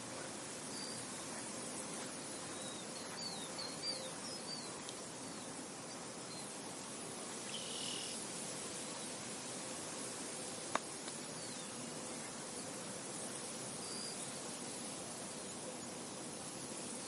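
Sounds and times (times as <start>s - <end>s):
insects: 0.0s - 17.0s
wind hissing: 0.0s - 17.0s
birds chirping: 0.2s - 6.6s.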